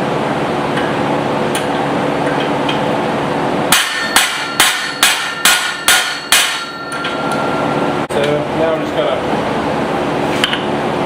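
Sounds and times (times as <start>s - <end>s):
steady mechanical noise: 0.0s - 11.0s
hammer striking steel on anvil: 3.7s - 7.8s.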